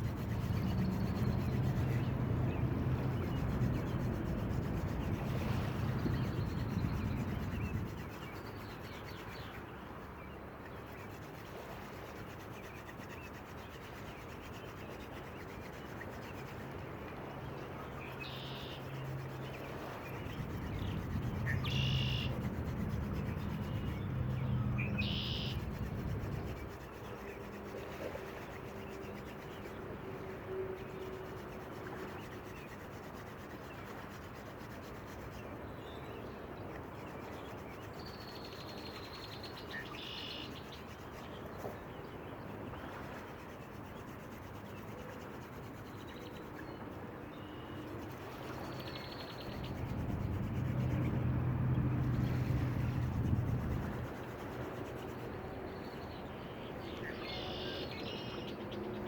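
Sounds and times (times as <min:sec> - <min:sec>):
low hum: 0:00.0 - 0:07.9, 0:19.9 - 0:26.7, 0:49.5 - 0:55.3
bird chirps: 0:20.6 - 0:22.4, 0:23.1 - 0:25.6, 0:57.0 - 0:58.8.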